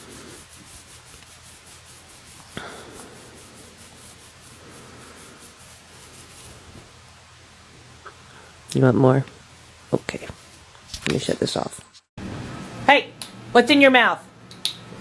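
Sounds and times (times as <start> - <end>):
fingers rubbing feathers: 0.0 - 6.9.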